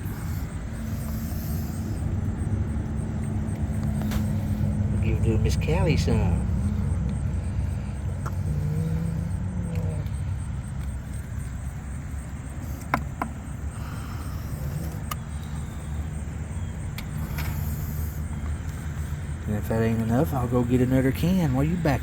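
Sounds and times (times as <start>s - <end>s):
low rumble: 0.0s - 12.8s.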